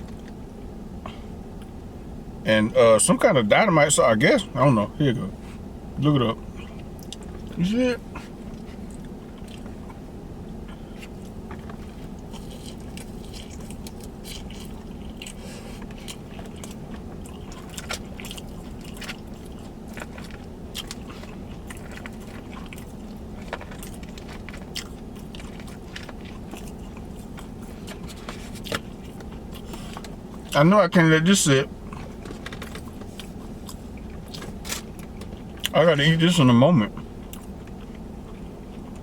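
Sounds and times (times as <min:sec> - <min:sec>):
steady low hum: 0:00.0 - 0:39.0
crunchy food chewing: 0:06.6 - 0:30.6, 0:31.8 - 0:35.8, 0:36.9 - 0:39.0.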